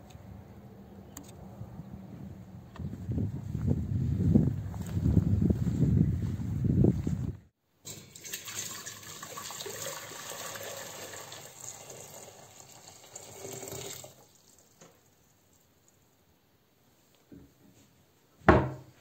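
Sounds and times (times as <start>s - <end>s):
water running from a tap: 7.9s - 14.8s.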